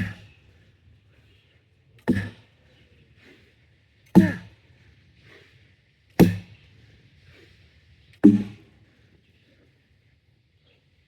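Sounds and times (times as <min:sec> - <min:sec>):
axe chopping wood: 0:02.1 - 0:02.4, 0:04.2 - 0:04.4, 0:06.2 - 0:06.4, 0:08.2 - 0:08.6.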